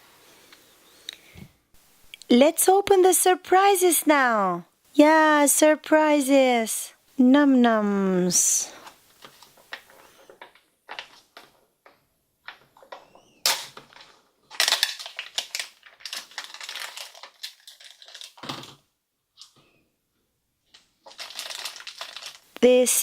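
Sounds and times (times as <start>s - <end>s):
plastic packaging crinkling: 12.8s - 18.8s, 20.7s - 22.6s.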